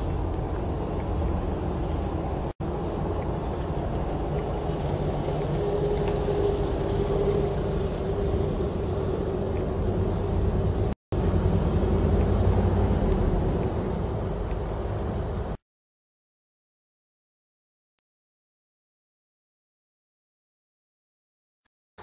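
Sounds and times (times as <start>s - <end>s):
vehicle engine drone: 0.0s - 15.6s.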